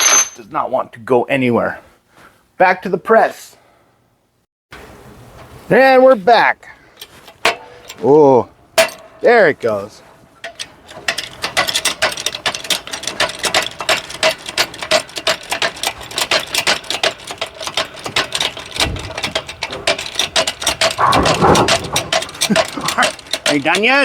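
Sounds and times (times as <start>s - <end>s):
grinding creak: 10.4s - 24.0s
shaft clicking in press: 10.4s - 24.0s.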